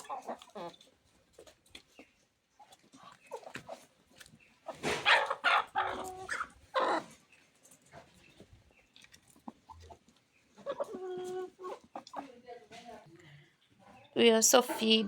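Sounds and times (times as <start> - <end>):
harsh animal calls: 4.7 - 7.2.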